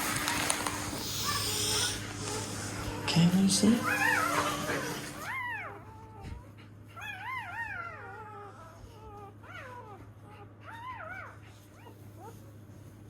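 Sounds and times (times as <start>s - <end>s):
puppy whimpering: 0.3s - 12.6s.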